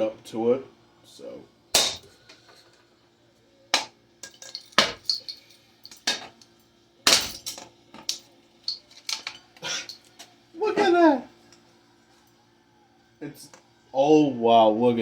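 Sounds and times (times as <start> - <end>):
metallic clinks and rattles: 4.2 - 10.2
heavy blows smashing ceiling fan: 7.1 - 7.6.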